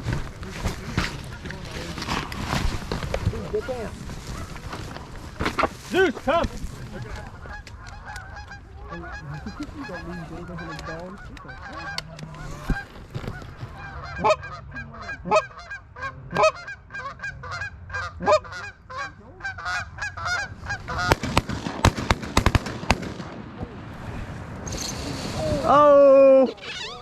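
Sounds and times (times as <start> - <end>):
geese honking and clucking: 0.0 - 22.9, 25.4 - 27.0.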